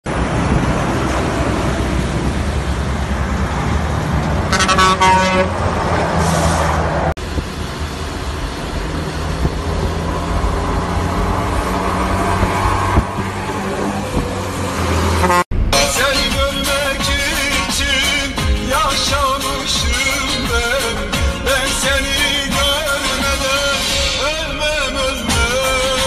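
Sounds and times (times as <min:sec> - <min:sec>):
vehicle horn blowing: 0:04.5 - 0:05.6, 0:15.2 - 0:15.9.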